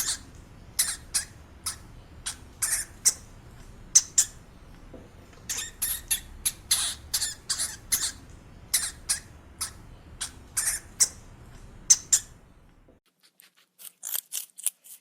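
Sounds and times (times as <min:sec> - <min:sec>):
small animal squeaking: 0:00.0 - 0:04.5, 0:05.4 - 0:12.4.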